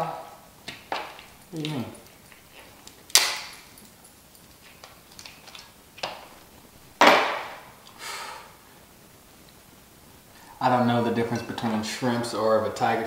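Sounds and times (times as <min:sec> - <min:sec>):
shellfish shells cracking: 0:00.6 - 0:06.4.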